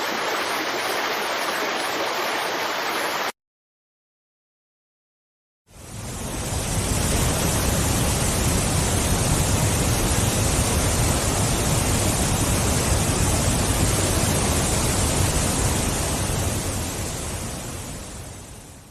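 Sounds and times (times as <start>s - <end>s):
waterfall rushing: 0.0s - 3.3s.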